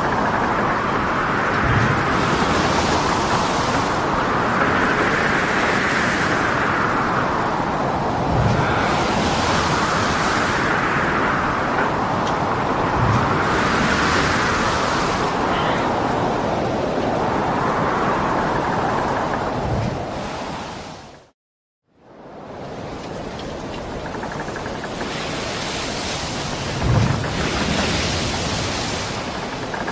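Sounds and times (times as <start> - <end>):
waves breaking: 0.0 - 21.3, 22.4 - 29.9
wind: 0.0 - 29.9.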